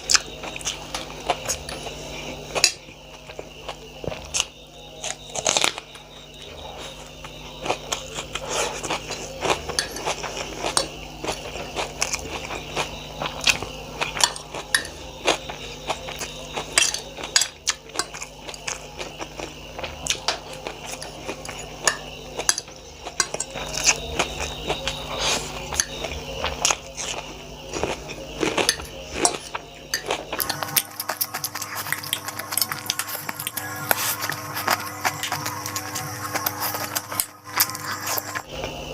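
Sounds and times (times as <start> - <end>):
chewing: 0.0 - 38.8
music: 0.0 - 38.9
steady low hum: 0.0 - 38.9
utensils clinking on plate: 9.7 - 10.9, 14.2 - 15.0.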